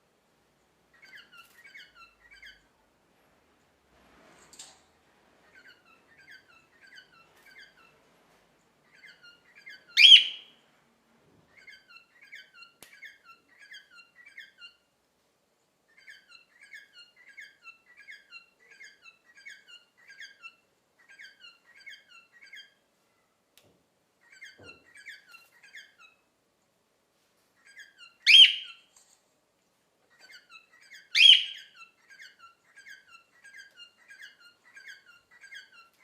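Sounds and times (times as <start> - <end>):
cockatiel chirping: 0.9 - 2.6, 5.4 - 8.0, 8.8 - 10.6, 11.5 - 14.9, 15.9 - 22.8, 24.2 - 26.2, 27.6 - 28.9, 30.1 - 36.0.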